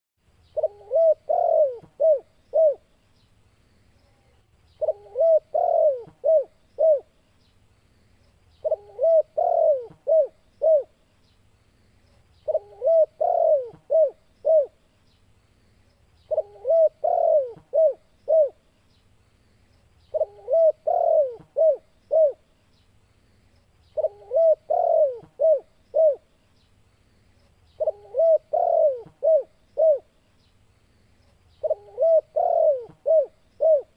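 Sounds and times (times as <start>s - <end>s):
dove cooing: 0.5s - 2.9s, 4.8s - 7.2s, 8.6s - 11.0s, 12.4s - 14.8s, 16.3s - 18.6s, 20.1s - 22.4s, 24.0s - 26.3s, 27.8s - 30.2s, 31.6s - 33.9s.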